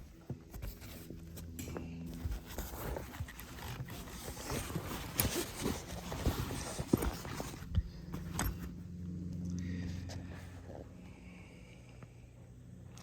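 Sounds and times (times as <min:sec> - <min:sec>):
rustling: 0:00.0 - 0:08.8
steady low hum: 0:00.0 - 0:13.0.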